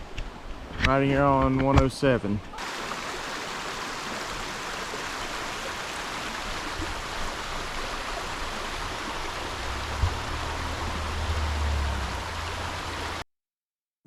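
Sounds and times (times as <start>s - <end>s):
waterfall rushing: 2.6s - 13.2s
low rumble: 9.5s - 12.8s.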